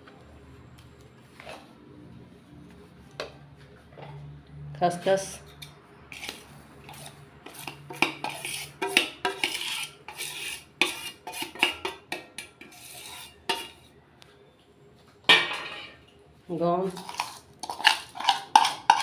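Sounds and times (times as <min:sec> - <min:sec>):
spoon scraping a cooking pan: 0:05.5 - 0:14.0, 0:16.9 - 0:19.0.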